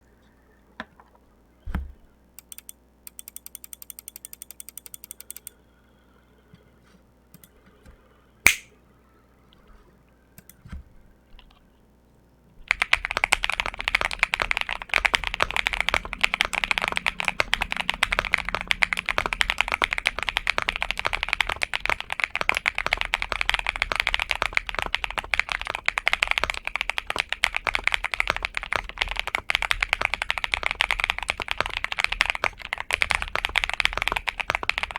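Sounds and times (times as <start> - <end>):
mechanical keyboard typing: 2.4 - 5.6, 7.4 - 7.6, 10.4 - 10.6, 12.6 - 34.9.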